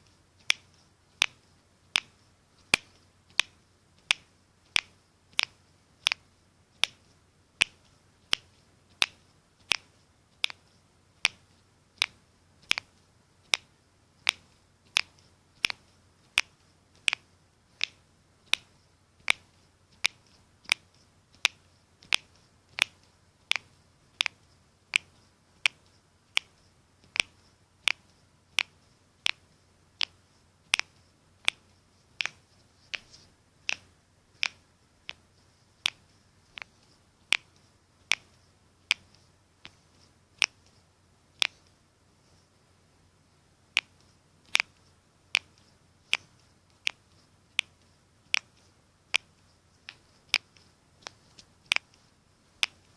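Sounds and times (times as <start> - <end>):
knuckles cracking: 13.5 - 15.8, 30.0 - 35.2.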